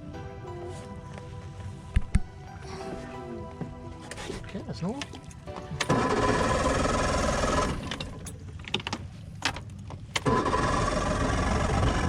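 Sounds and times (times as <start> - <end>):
outboard engine cranking: 4.0 - 12.0.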